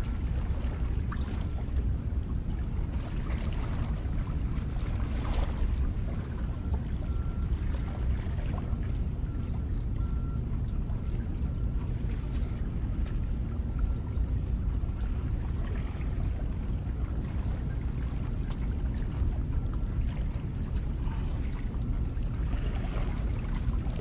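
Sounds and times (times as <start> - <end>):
faint ticks: 10.6 - 10.8, 12.5 - 13.3.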